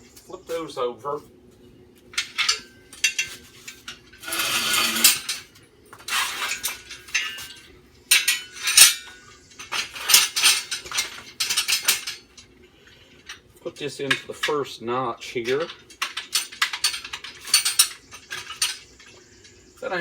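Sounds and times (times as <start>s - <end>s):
metal scraping: 2.2s - 12.4s
metal parts clanking and clinking: 2.2s - 12.5s, 13.2s - 20.0s.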